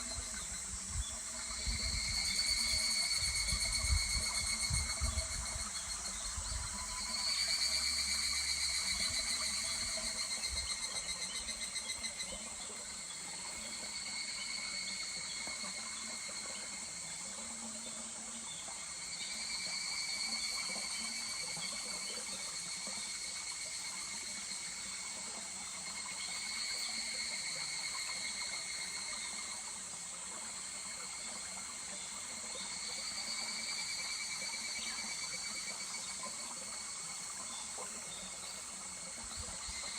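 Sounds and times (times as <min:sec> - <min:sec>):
cicadas trilling: 0:00.0 - 0:39.9
stream murmuring: 0:00.0 - 0:39.9.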